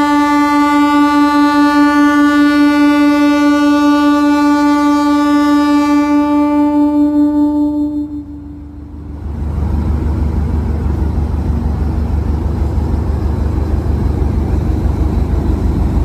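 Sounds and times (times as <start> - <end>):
train horn long blast: 0.0 - 9.6.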